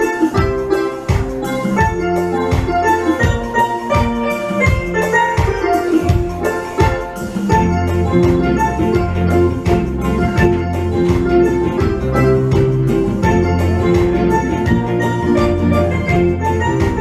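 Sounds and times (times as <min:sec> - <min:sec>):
steady drum beat: 0:00.0 - 0:17.0
steel drum melody: 0:00.0 - 0:17.0.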